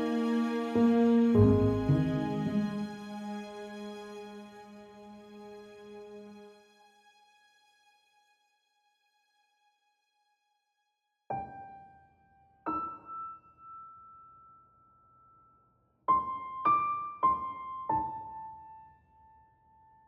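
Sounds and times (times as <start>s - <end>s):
slow piano notes: 0.0s - 3.9s.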